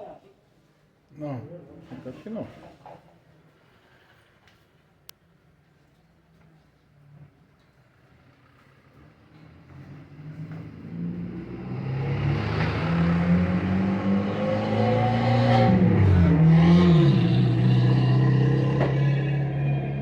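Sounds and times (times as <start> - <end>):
vehicle engine approaching: 8.0 - 20.0.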